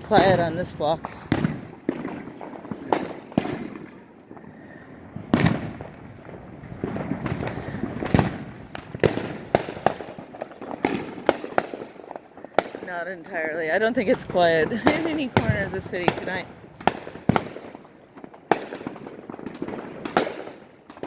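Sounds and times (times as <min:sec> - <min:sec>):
fireworks bangs and pops: 0:00.0 - 0:21.0.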